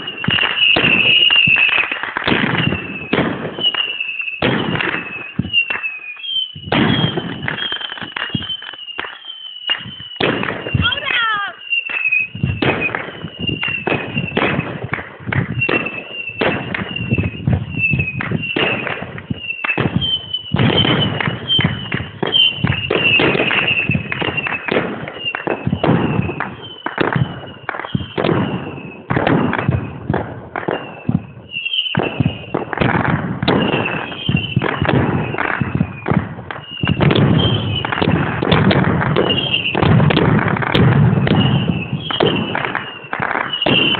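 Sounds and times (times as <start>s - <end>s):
falling firework whistles: 0.0s - 43.9s
fireworks bangs: 0.0s - 43.9s.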